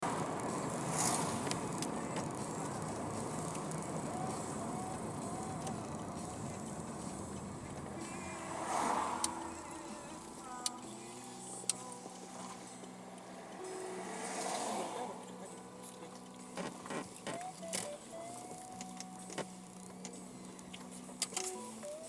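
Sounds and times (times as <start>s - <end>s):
car squeaking: 0.0s - 22.0s
vehicle noise: 0.0s - 22.0s
sharp ticks: 0.1s - 8.5s.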